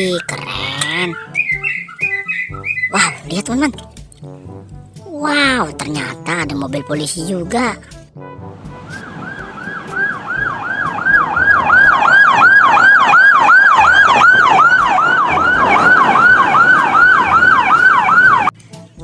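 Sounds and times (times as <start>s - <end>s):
police siren yelping: 0.2s - 3.7s, 8.8s - 18.6s.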